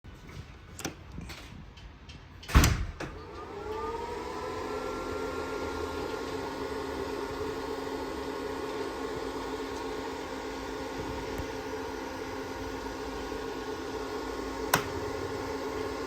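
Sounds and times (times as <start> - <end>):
electric motor whine: 3.2 - 16.0
clicks: 14.6 - 15.0.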